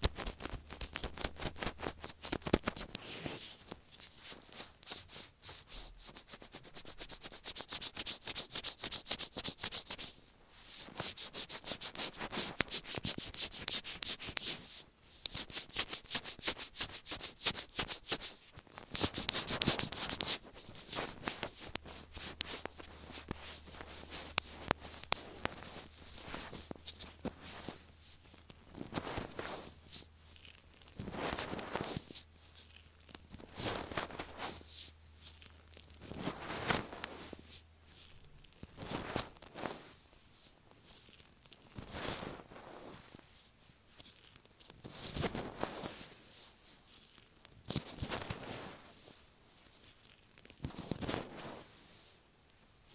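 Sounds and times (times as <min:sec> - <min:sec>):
rubbing on earphone microphone: 0:00.0 - 0:38.2.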